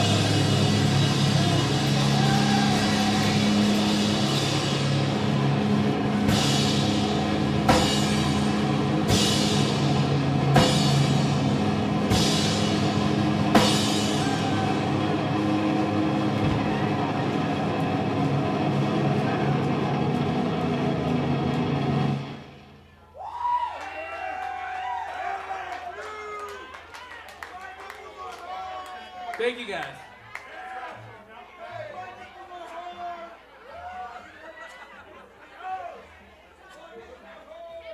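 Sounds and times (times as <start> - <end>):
rock band held chord: 0.0 - 22.9.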